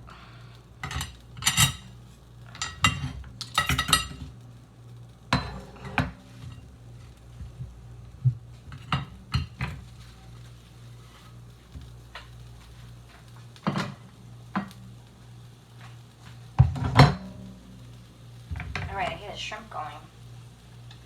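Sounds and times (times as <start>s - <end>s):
steady low hum: 0.0s - 21.0s
dishes and utensils clinking: 0.8s - 1.9s, 2.5s - 4.3s, 5.3s - 6.6s, 8.7s - 9.9s, 16.6s - 17.5s.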